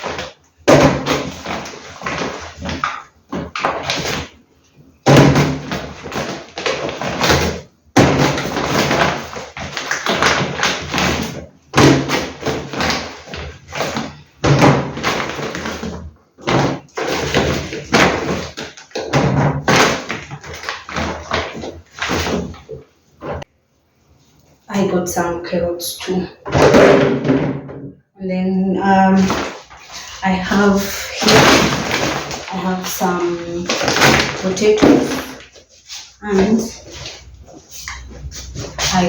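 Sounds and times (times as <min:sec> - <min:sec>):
plastic bags rustling: 0:00.0 - 0:23.5, 0:28.8 - 0:39.0
produce tapping and thudding: 0:26.4 - 0:28.0, 0:29.2 - 0:39.0.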